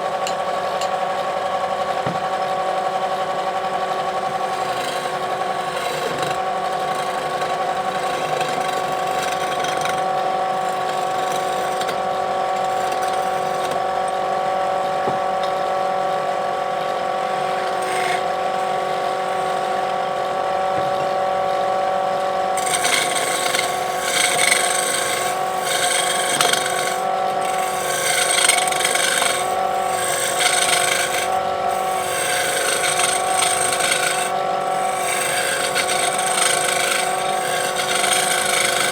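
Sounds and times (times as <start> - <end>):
wood lathe motor humming: 0.0 - 38.9
turning tool scraping wood: 4.3 - 13.9, 17.2 - 20.1, 22.4 - 38.9.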